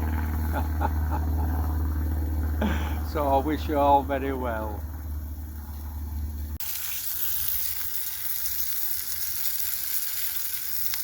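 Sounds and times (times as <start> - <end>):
low rumble: 0.0 - 6.6
food sizzling in a pan: 6.6 - 11.0.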